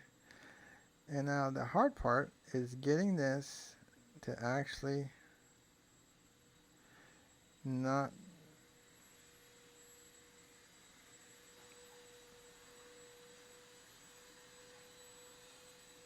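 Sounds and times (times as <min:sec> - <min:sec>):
faint pure tone: 0:06.9 - 0:08.5.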